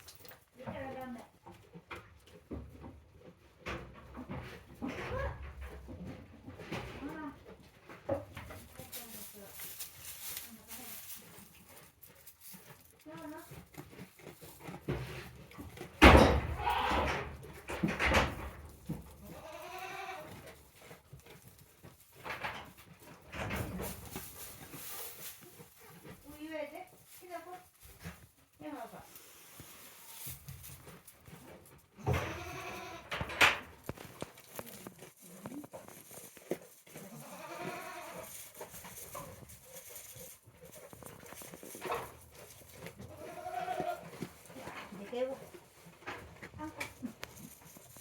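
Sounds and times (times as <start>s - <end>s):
goat bleating: 19.2s - 20.4s, 32.0s - 33.1s, 37.1s - 38.3s, 43.1s - 44.1s.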